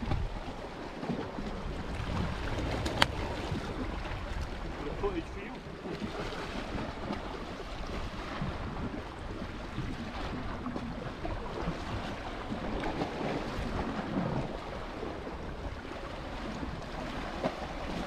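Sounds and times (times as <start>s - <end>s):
sea surf on shore: 0.0s - 18.0s
wind buffeting microphone: 0.0s - 18.0s.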